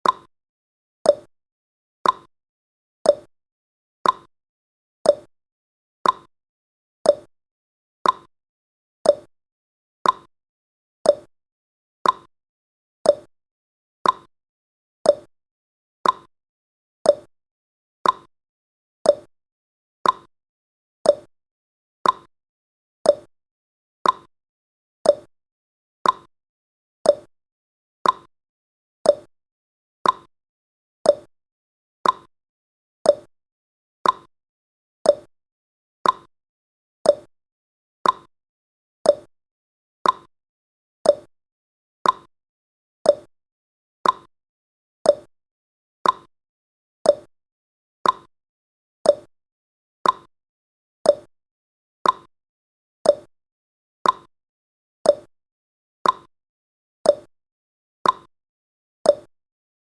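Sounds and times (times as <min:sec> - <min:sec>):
clock ticking: 0:48.0 - 0:48.3, 0:56.0 - 0:56.3.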